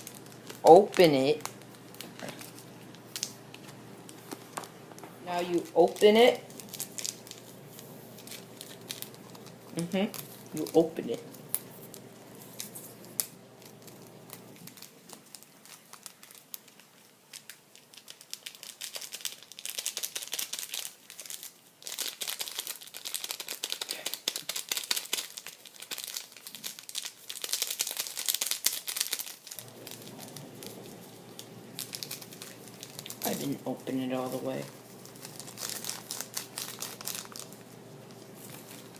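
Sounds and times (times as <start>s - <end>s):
packet crinkling and tearing: 0.0s - 38.9s.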